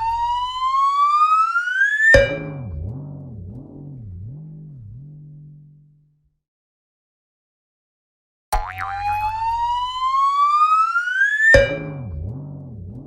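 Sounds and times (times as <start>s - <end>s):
twangy twing: 2.1s - 4.7s, 8.6s - 9.4s, 11.5s - 12.7s
low wobbling boing: 2.2s - 5.8s, 8.6s - 9.7s, 11.6s - 13.0s.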